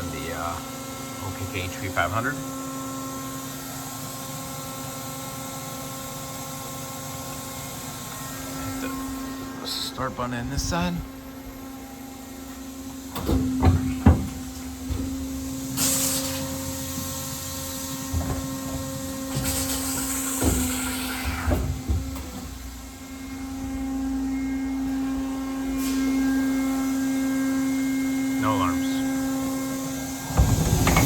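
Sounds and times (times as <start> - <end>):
machine hum: 0.0 - 31.0
pallet changer clunks: 12.5 - 22.8, 29.2 - 31.0
air hiss: 15.8 - 17.8.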